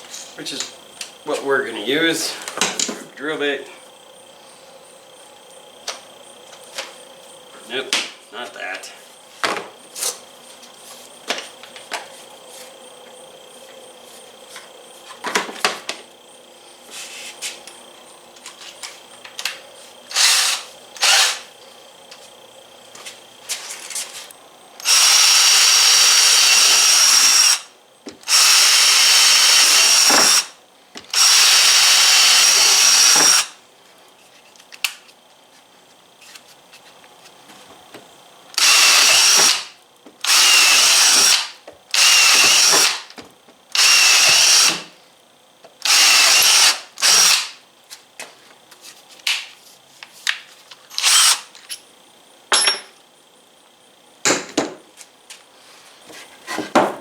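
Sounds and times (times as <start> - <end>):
cordless drill whining: 20.1 - 21.5, 24.8 - 30.5, 31.1 - 33.6, 38.6 - 43.1, 43.7 - 44.8, 45.8 - 47.5, 50.9 - 51.5.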